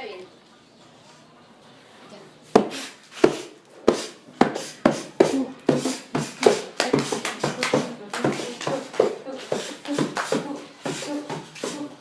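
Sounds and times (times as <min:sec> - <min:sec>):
drum beat: 0:04.4 - 0:11.9.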